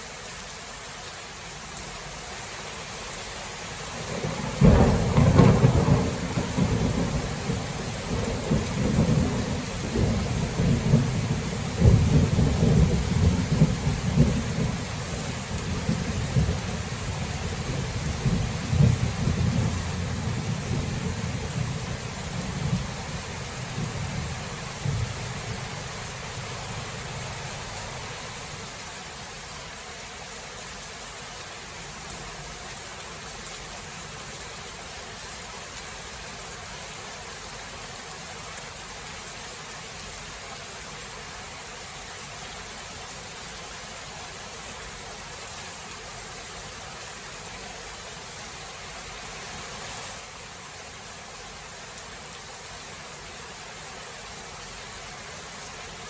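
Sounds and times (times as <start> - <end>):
steady rain hiss: 0.0 - 56.0
low thunder rumble: 4.0 - 28.3.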